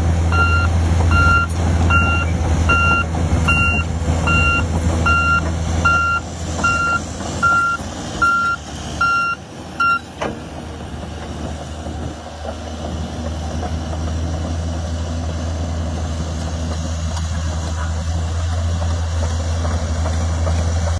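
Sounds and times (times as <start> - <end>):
diesel engine running: 0.0 - 20.9
backup alarm beeping: 0.3 - 10.0.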